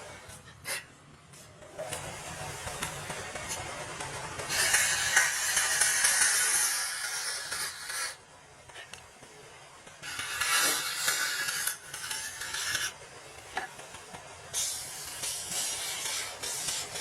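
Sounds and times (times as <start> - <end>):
sanding wood: 14.6 - 17.0.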